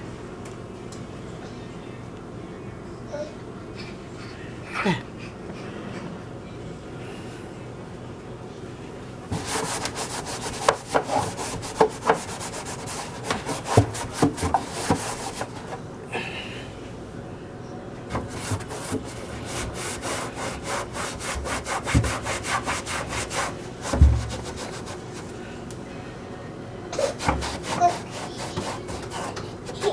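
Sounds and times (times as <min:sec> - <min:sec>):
scrubbing metal range hood: 0:09.3 - 0:15.8, 0:18.1 - 0:25.4, 0:27.0 - 0:29.9.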